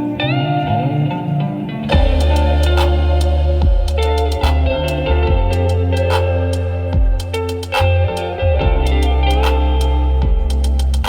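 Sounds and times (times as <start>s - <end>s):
deep bass notes: 0.0s - 11.0s
plucked guitar-like melody: 0.0s - 11.0s
high percussion ticks: 1.9s - 11.0s.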